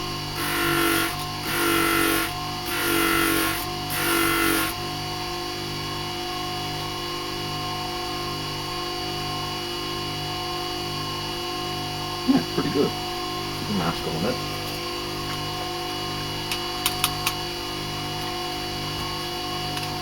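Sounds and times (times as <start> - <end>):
grinding wheel humming: 0.0 - 4.8, 16.8 - 17.4.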